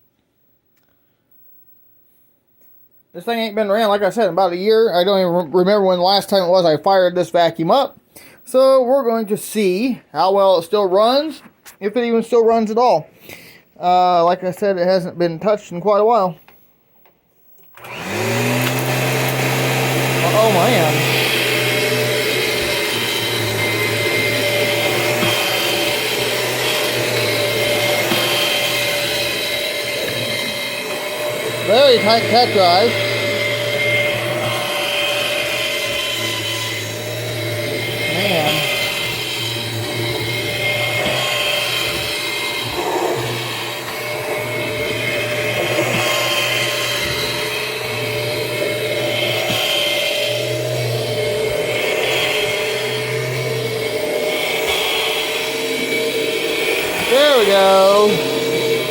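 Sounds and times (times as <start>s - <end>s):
upright vacuum motor whine: 17.7s - 58.9s.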